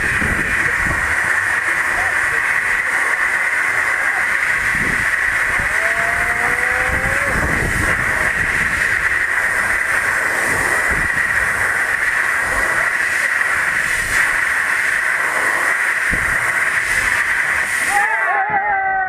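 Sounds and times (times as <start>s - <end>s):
compressed air hissing: 0.0s - 19.0s.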